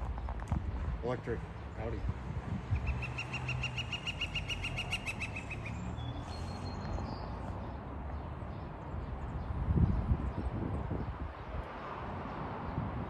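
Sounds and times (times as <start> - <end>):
woodpecker calling: 2.7 - 6.9
high bird chirps: 2.7 - 7.3.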